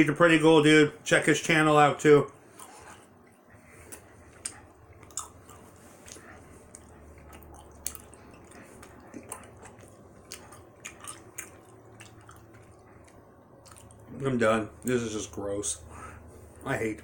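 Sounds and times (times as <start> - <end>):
mouth chewing gummy candy: 2.3 - 14.2.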